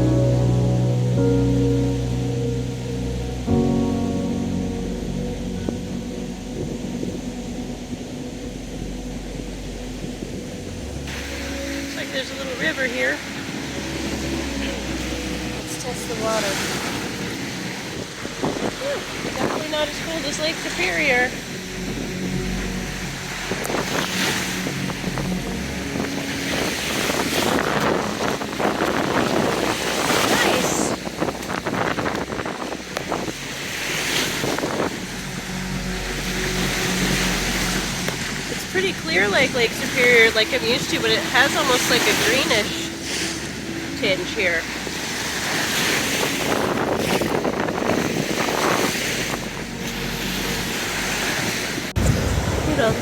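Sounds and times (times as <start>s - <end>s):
water waves: 0.0s - 53.0s
wind buffeting microphone: 0.0s - 53.0s.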